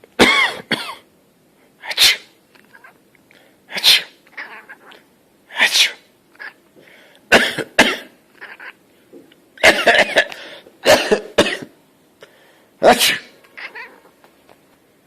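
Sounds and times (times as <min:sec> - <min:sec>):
person sneezing: 0:01.8 - 0:02.4, 0:03.7 - 0:04.2, 0:05.5 - 0:06.1, 0:12.8 - 0:13.4
cat meowing: 0:02.6 - 0:03.0, 0:04.3 - 0:05.0, 0:06.4 - 0:06.6, 0:08.3 - 0:08.8, 0:13.5 - 0:14.2.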